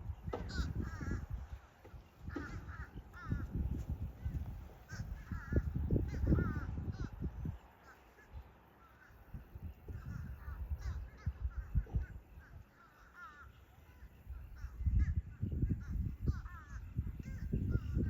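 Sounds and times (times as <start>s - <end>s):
bird giving harsh calls: 2.2s - 3.6s.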